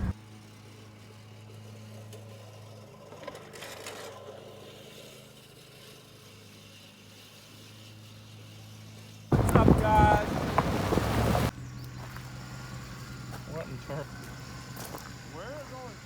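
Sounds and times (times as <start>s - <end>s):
vehicle engine humming: 9.3s - 16.0s.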